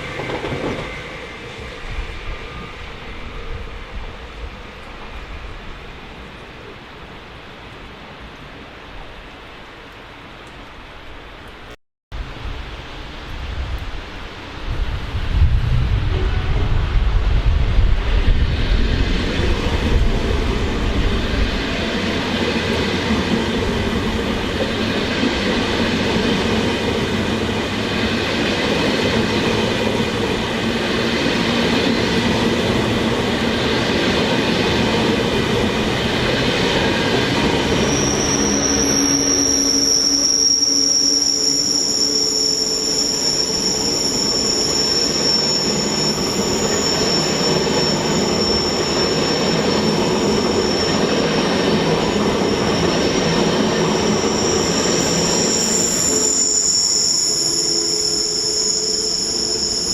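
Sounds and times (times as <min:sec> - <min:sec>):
train rumbling past: 0:00.0 - 0:06.8, 0:12.2 - 0:59.9
high-pitched squeal: 0:18.4 - 0:32.7, 0:33.6 - 0:59.9.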